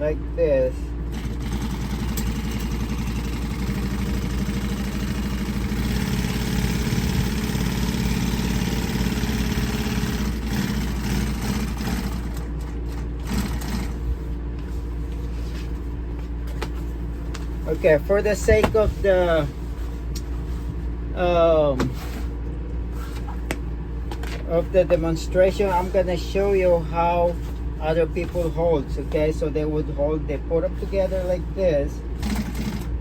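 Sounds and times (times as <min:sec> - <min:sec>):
low motor hum: 0:00.0 - 0:33.0
sewing machine stitching: 0:01.1 - 0:14.0, 0:32.2 - 0:33.0.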